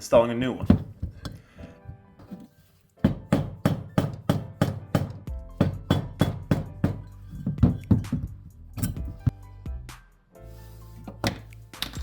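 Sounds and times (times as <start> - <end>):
music with quick percussive beat: 3.0 - 10.1.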